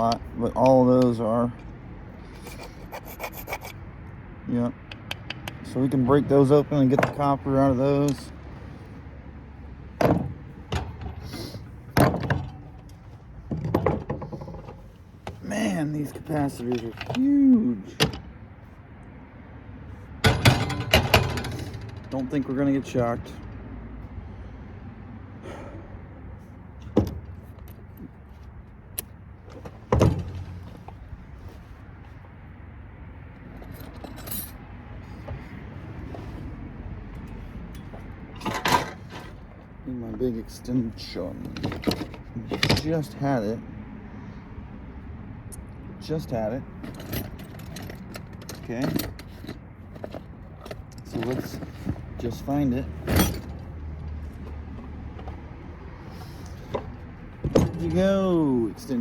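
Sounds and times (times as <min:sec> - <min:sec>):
heavy parts knocking and clunking: 0:00.0 - 0:03.8, 0:04.7 - 0:18.7, 0:20.1 - 0:23.4, 0:26.6 - 0:32.4, 0:33.2 - 0:43.5, 0:45.6 - 0:59.0
metal rattle: 0:09.9 - 0:18.4, 0:20.2 - 0:22.5, 0:29.0 - 0:31.8, 0:33.4 - 0:43.3, 0:46.2 - 0:59.0.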